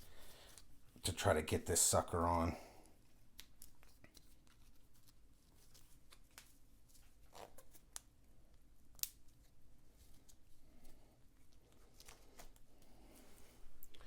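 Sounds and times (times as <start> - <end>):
nylon watch strap rustling: 3.1 - 8.1, 9.0 - 14.0.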